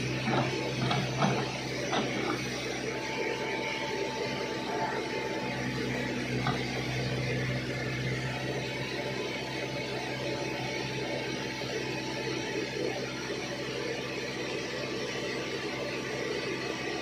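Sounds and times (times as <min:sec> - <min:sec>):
diesel engine running: 0:00.0 - 0:13.2.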